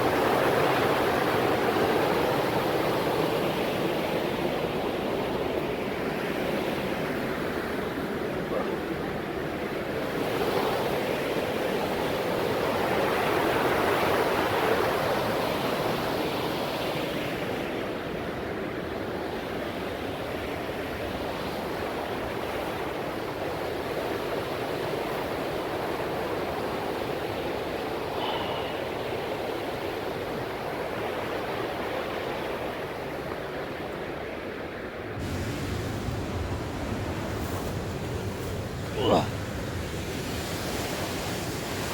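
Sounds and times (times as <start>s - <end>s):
white water rushing: 35.2s - 41.9s.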